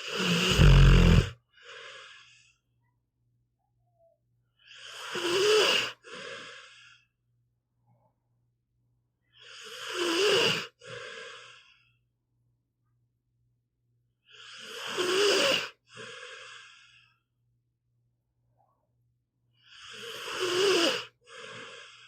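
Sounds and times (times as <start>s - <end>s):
dog snoring: 0.0s - 1.4s, 4.8s - 6.6s, 9.4s - 11.6s, 14.3s - 16.8s, 19.7s - 21.9s.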